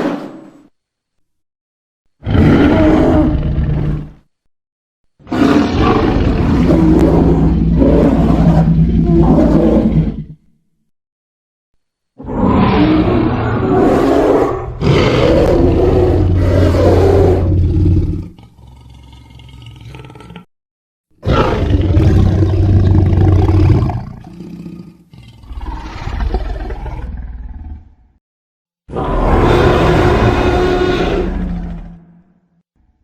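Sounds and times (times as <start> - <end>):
deep monster roars: 2.2 - 4.2, 5.3 - 10.4, 12.2 - 20.5, 21.2 - 28.2, 28.9 - 32.3.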